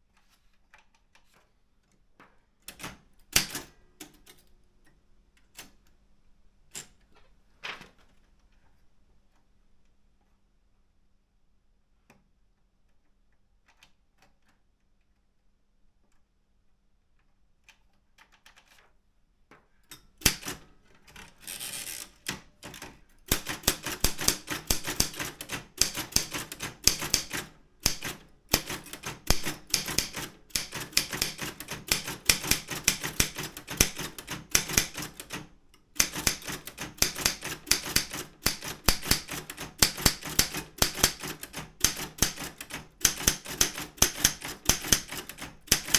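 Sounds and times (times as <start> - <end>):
manual typewriter keystrokes: 2.7 - 4.5, 19.9 - 45.9.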